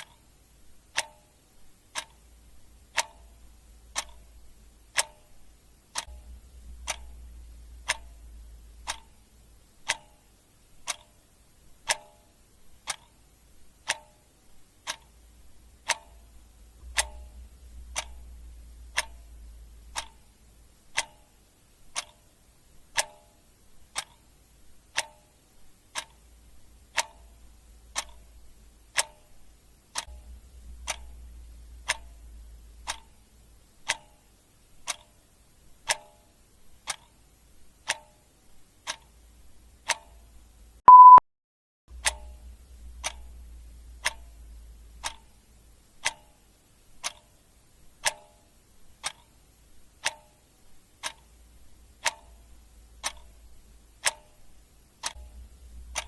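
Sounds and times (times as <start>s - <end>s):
clock ticking: 0.0s - 41.2s, 41.9s - 56.0s
loud electronic beep: 40.9s - 41.2s.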